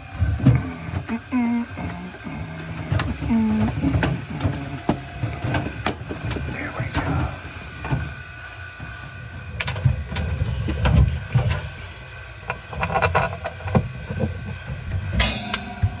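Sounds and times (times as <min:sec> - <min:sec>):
low steady hum: 0:00.0 - 0:08.4.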